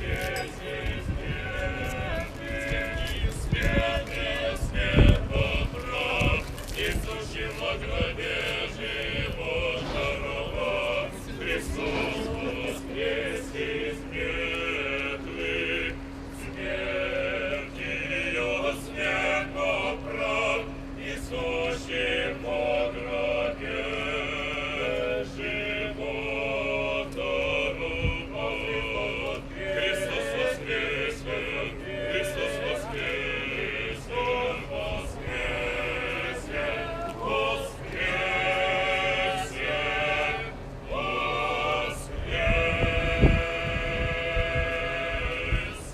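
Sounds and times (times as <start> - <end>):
male choir chanting: 0.0 - 45.9
steady low tone: 0.0 - 45.9.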